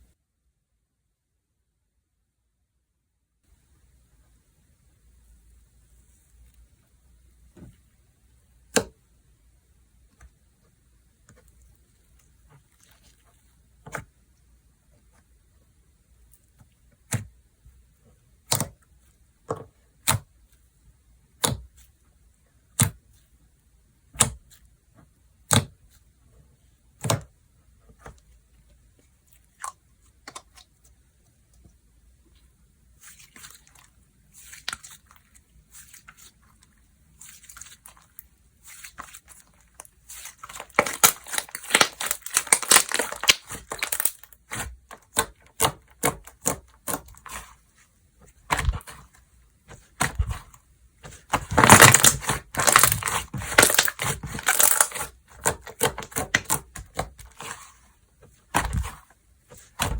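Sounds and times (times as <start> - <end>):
slime crackling softly: 10.1 - 15.3, 27.9 - 59.9
slime popping: 40.1 - 47.5, 51.1 - 57.7.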